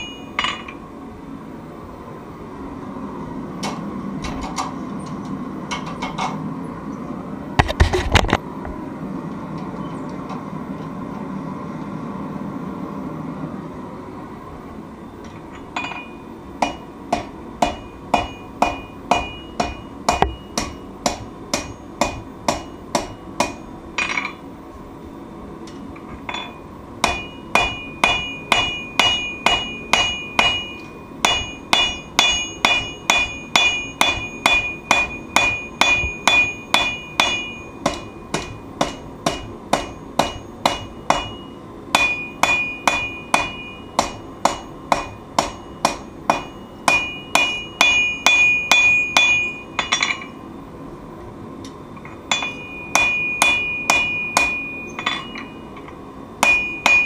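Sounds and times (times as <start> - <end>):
hammer striking metal on anvil: 0.0 - 0.8, 15.6 - 24.4, 26.3 - 50.4, 52.0 - 57.0.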